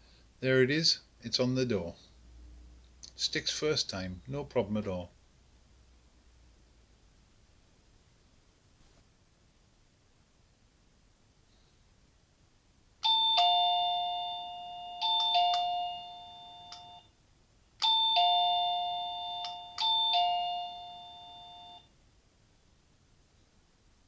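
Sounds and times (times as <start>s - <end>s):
doorbell chime: 13.0s - 17.1s, 17.8s - 21.9s.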